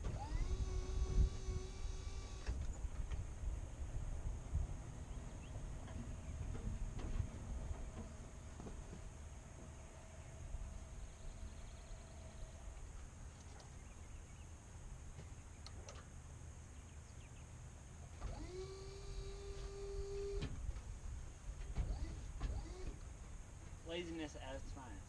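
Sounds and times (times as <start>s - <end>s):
small motor running: 0.0s - 2.6s, 18.2s - 20.5s, 21.8s - 23.0s
low background rumble: 0.0s - 25.0s.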